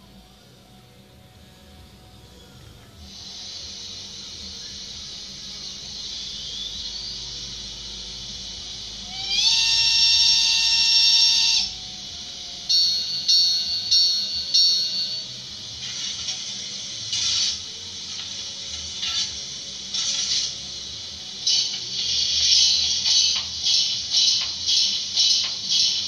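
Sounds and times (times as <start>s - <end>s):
steam hissing: 1.4s - 26.0s
steam whistle through small speaker: 3.1s - 15.5s
short whistle toots: 6.1s - 7.5s, 9.0s - 11.9s.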